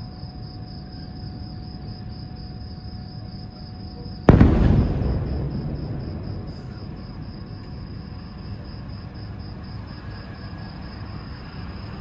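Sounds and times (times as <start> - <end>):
crickets chirping: 0.0 - 12.0
blast echo: 4.3 - 9.0
low rumble: 4.3 - 9.0.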